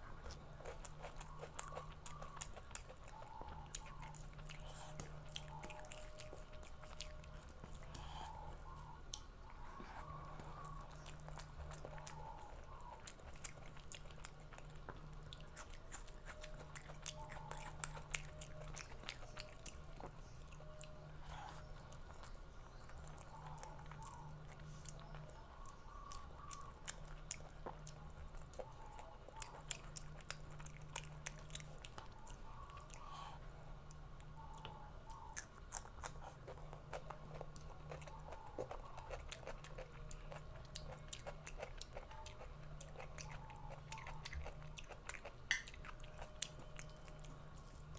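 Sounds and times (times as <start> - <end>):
faint low hum: 0.0 - 47.9
food crunching: 0.0 - 47.9
person chewing food: 0.0 - 47.9.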